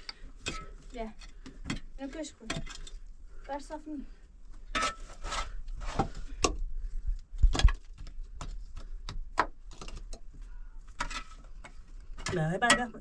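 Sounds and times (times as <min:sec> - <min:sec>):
building materials knocking and scraping: 0:10.9 - 0:13.0.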